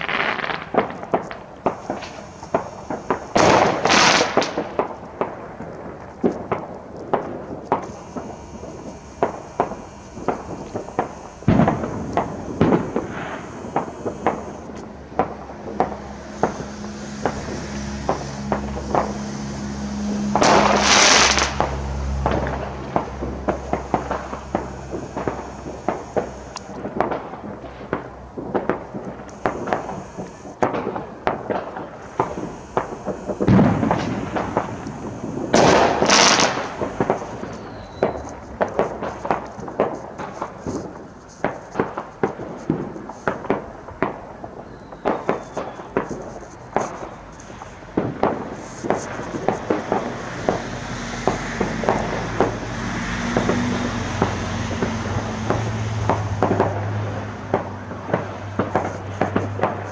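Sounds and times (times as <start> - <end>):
fireworks bangs and pops: 0.0 - 59.9
loud firework booms: 0.0 - 59.9.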